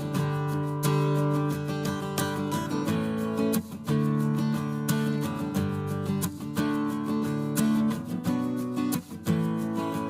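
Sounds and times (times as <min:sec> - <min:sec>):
strummed acoustic guitar: 0:00.0 - 0:10.0.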